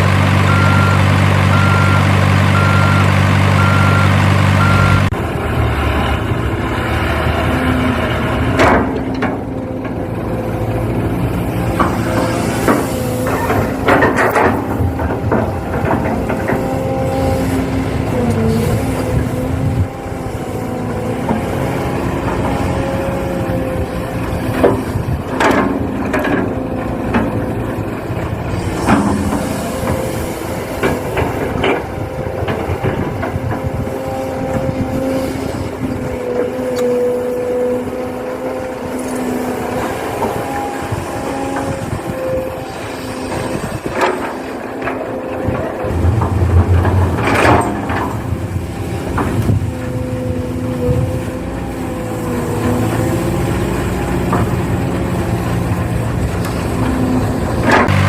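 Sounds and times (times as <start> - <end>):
model excavator motor whine: 0.0 - 8.0, 26.5 - 58.0.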